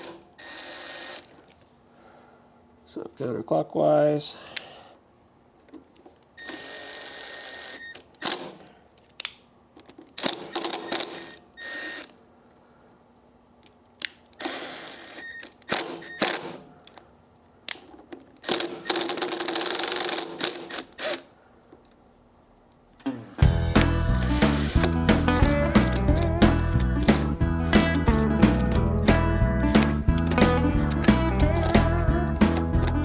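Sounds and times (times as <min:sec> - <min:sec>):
screwdriver whirring: 0:00.0 - 0:01.6, 0:06.1 - 0:12.2, 0:13.7 - 0:17.1, 0:17.7 - 0:22.0, 0:24.1 - 0:28.8.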